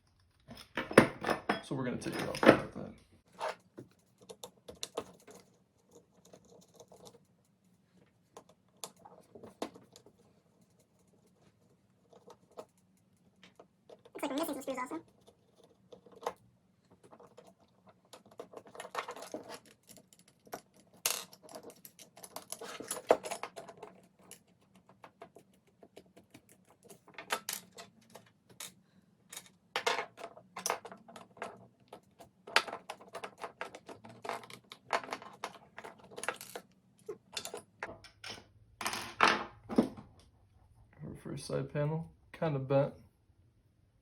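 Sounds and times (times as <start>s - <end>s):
metal parts and tools clinking: 0.5s - 2.8s, 32.5s - 39.9s.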